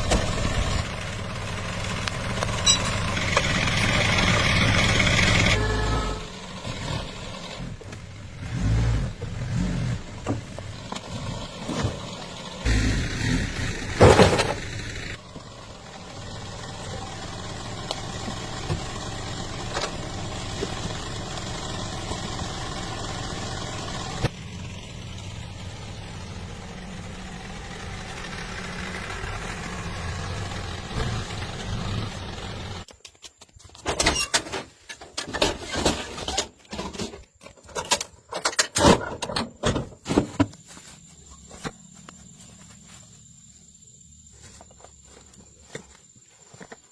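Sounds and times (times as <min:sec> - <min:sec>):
car engine running: 0:00.0 - 0:32.9.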